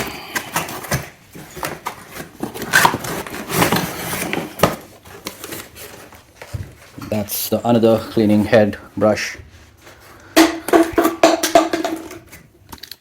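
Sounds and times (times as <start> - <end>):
plastic attachments clicking and knocking: 10.4 - 13.0.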